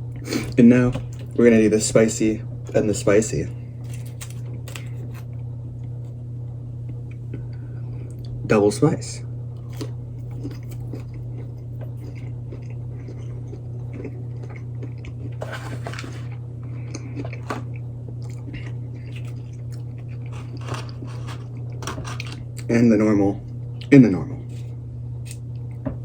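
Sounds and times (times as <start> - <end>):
steady low hum: 0.0 - 26.0
person chewing crunchy food: 9.6 - 22.7.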